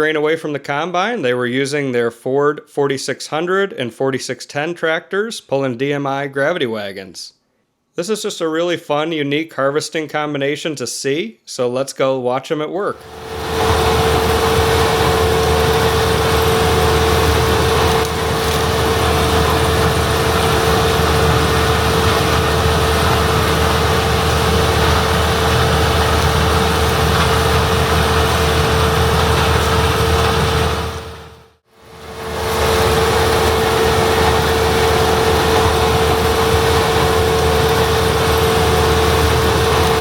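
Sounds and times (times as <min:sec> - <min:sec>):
constant machine whine: 0:13.0 - 0:40.0
diesel engine hum: 0:13.0 - 0:40.0.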